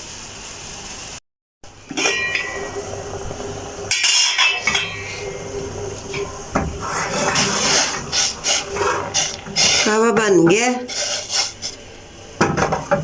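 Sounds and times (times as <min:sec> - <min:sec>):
metal pot and lid clattering: 0:01.9 - 0:02.9, 0:03.9 - 0:05.5
steady hiss: 0:02.6 - 0:12.3.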